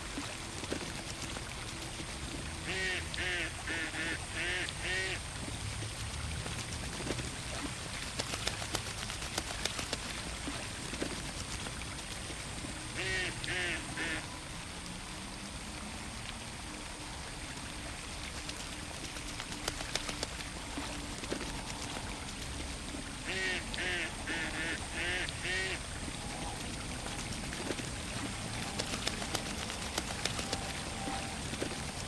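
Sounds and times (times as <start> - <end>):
water washing: 0.0 - 16.7, 17.6 - 32.0
small splashes and drips: 0.0 - 32.0
ducks quacking: 2.6 - 5.2, 13.0 - 14.2, 23.2 - 25.8.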